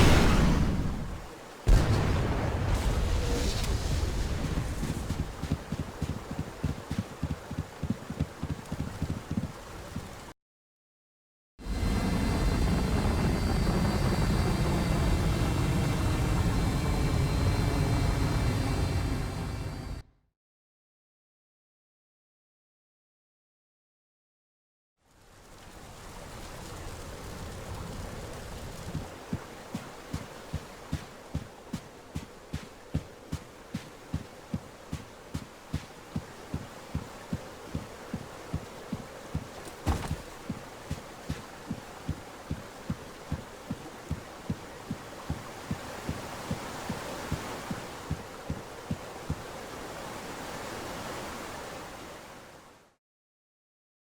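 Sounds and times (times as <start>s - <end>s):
faint high whines: 11.6s - 20.0s
low engine-like rumble: 11.6s - 20.0s.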